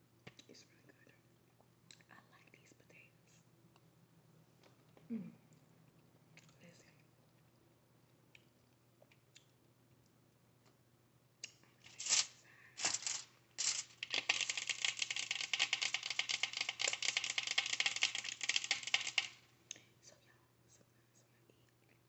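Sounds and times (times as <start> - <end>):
dense crackling: 11.9 - 19.4.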